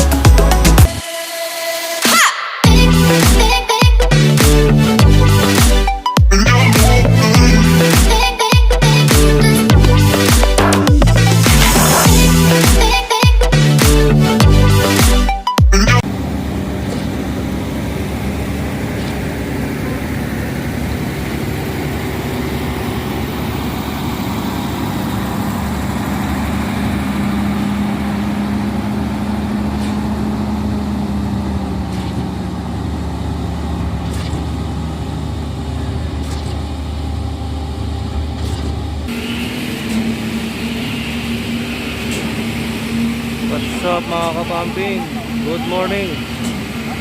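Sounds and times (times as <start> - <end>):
diesel truck engine running: 0.0 - 1.1, 2.6 - 47.0
engine hum: 0.0 - 2.0, 2.6 - 47.0.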